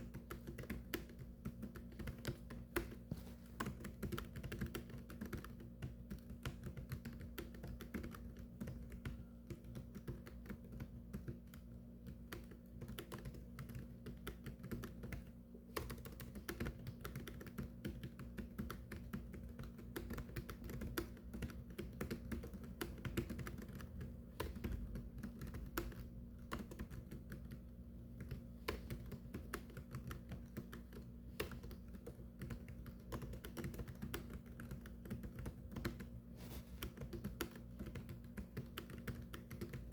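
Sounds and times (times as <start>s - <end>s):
keyboard typing: 0.0s - 39.9s
low steady hum: 0.0s - 39.9s.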